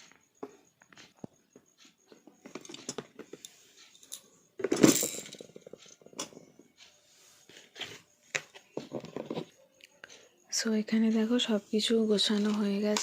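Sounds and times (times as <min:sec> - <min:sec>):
household items clattering: 0:02.1 - 0:06.7, 0:07.7 - 0:09.6, 0:12.1 - 0:13.0.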